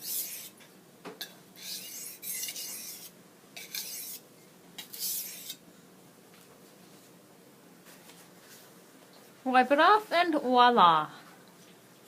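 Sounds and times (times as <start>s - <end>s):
knife scraping on sharpening stone: 0.0s - 0.6s, 1.6s - 4.2s, 4.8s - 5.6s.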